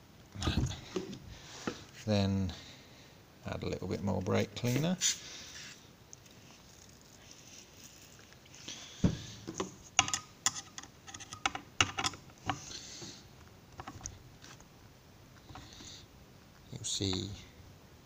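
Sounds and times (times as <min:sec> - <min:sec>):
sharp clicks and knocks: 0:09.5 - 0:12.6.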